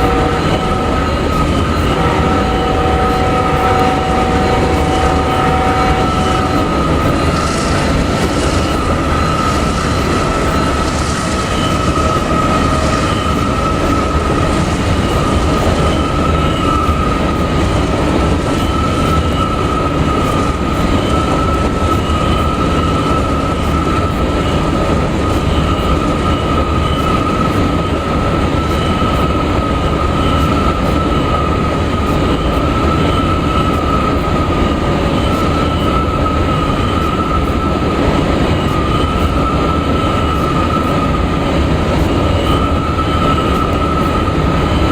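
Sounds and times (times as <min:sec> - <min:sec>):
high-pitched wheel squeal: 0:00.0 - 0:17.6
train cars rumbling past: 0:00.0 - 0:44.9.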